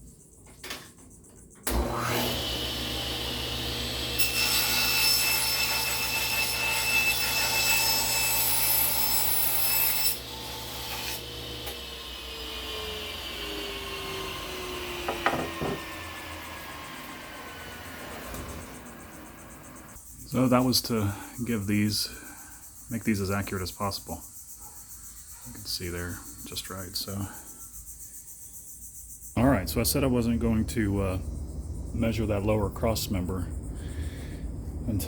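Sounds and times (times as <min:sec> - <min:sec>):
table saw switched on: 0:01.7 - 0:04.4, 0:10.9 - 0:19.8
table saw spinning down: 0:01.7 - 0:08.2, 0:10.1 - 0:20.0
saw blade cutting board: 0:01.7 - 0:20.0.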